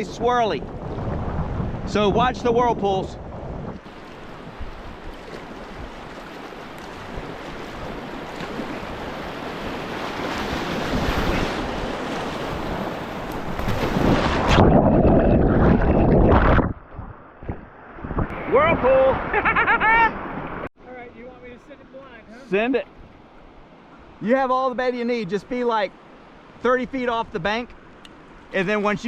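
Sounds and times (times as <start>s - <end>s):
wind buffeting microphone: 0.0s - 19.3s.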